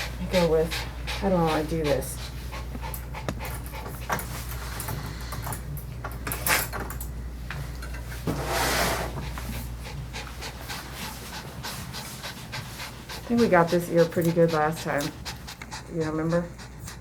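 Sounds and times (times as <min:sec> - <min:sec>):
dog panting: 0:00.0 - 0:05.3, 0:09.0 - 0:17.0.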